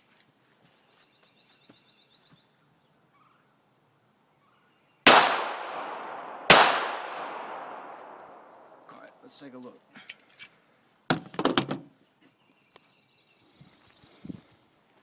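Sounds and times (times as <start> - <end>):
pistol shots with echo: 5.1 - 8.9.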